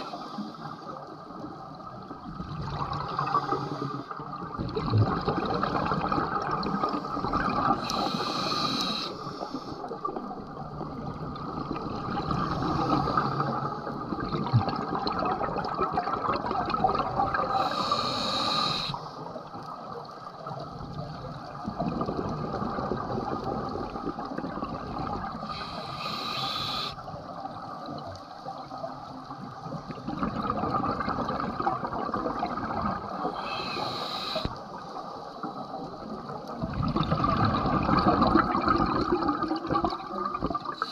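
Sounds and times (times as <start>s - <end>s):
exhaled bubbles gurgling: 0.0s - 40.9s
regulator inhalation hiss: 7.8s - 9.9s, 17.5s - 19.2s, 25.4s - 27.0s, 33.3s - 34.6s.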